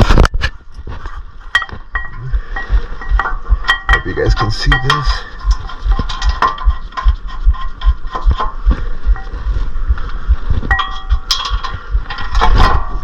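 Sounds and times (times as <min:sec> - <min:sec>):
metallic clinks of hand tools: 0:01.6 - 0:06.7
background music with steady beat: 0:01.6 - 0:12.1.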